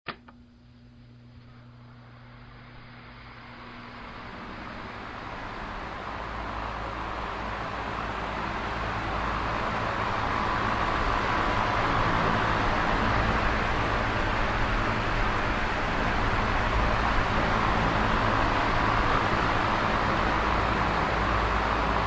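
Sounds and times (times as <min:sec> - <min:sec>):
electric fan running: 0:00.1 - 0:22.0.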